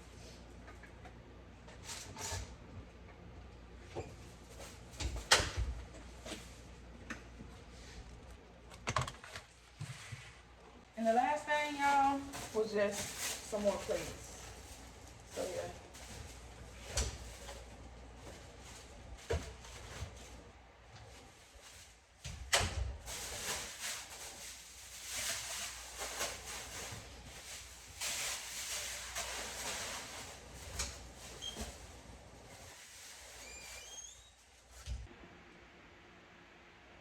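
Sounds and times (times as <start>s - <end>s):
crinkly rustling: 11.0s - 22.2s, 23.0s - 34.8s
faint squeaks: 33.1s - 34.6s.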